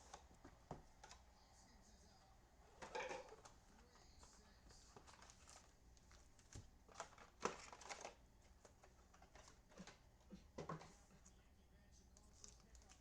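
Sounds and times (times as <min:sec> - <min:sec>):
plastic wrapping crinkling: 0:04.9 - 0:10.0.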